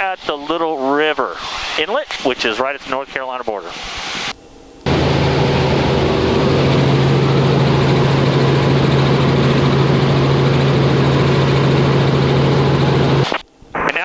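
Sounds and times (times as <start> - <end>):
helicopter cabin noise: 4.4 - 14.0.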